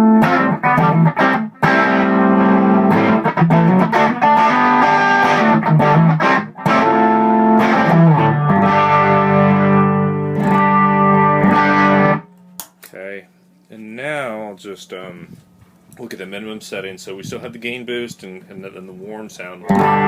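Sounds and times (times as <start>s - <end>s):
electric guitar notes and chords: 0.0s - 12.4s, 19.6s - 20.0s.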